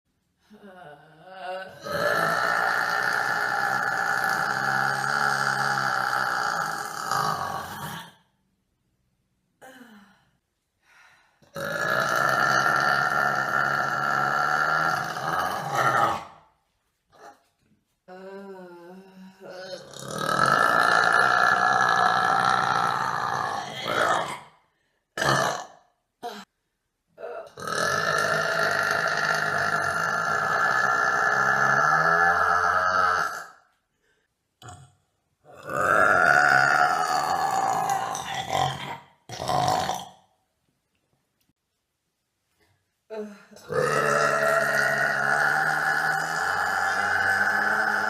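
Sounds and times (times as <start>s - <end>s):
person burping: 1.6s - 8.4s, 11.4s - 16.5s, 19.4s - 24.6s, 25.2s - 26.5s, 27.2s - 33.7s, 34.6s - 40.4s, 43.5s - 48.0s.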